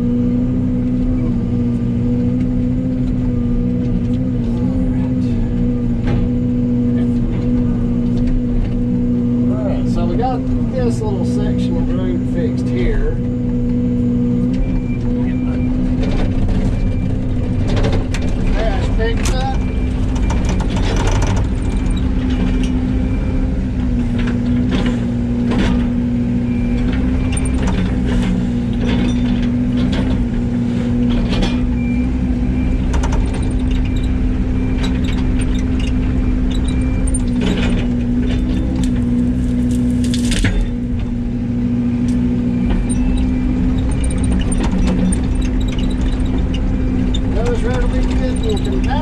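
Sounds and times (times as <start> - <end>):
excavator diesel engine running: 0.0 - 49.0
knocks and clanks: 14.5 - 22.9, 23.8 - 26.0, 26.8 - 32.0, 32.6 - 41.2, 42.6 - 49.0.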